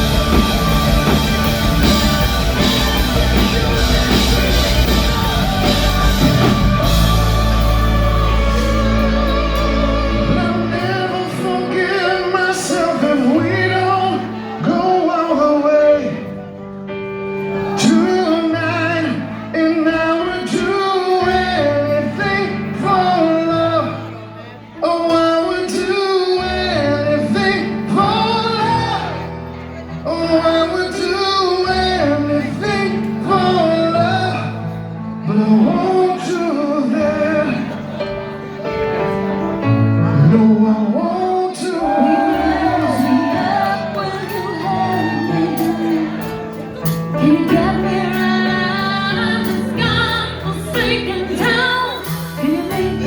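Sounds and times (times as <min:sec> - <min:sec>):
person singing with vibrato: 0:00.0 - 0:16.6, 0:39.1 - 0:53.0
live rock band playing: 0:00.0 - 0:24.4, 0:25.2 - 0:53.0.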